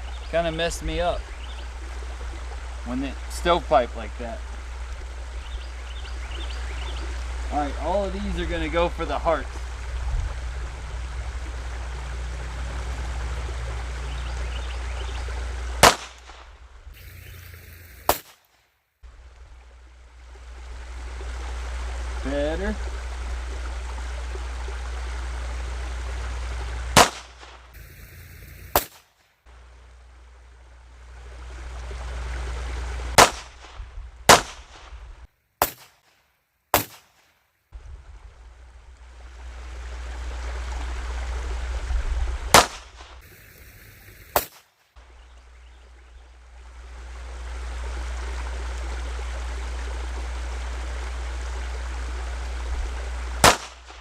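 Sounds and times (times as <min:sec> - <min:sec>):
wind rumbling on microphone: 0:04.3 - 0:18.1, 0:31.0 - 0:35.3, 0:37.7 - 0:44.4, 0:45.0 - 0:54.0
gunshots: 0:15.8 - 0:16.5, 0:18.0 - 0:18.4, 0:27.0 - 0:27.6, 0:28.6 - 0:29.1, 0:33.2 - 0:34.9, 0:36.8 - 0:37.2, 0:42.5 - 0:43.1, 0:53.4 - 0:54.0.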